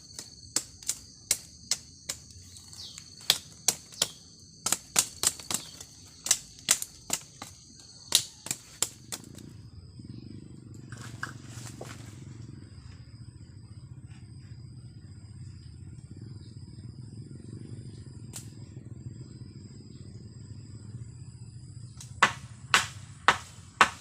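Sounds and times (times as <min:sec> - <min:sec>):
high drone of insects: 0:00.0 - 0:24.0
sharp chopping knocks: 0:22.2 - 0:24.0.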